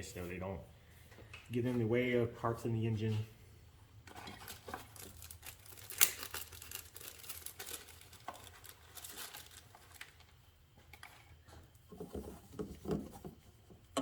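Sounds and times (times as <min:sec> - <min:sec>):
wires rustling: 0:04.0 - 0:12.6.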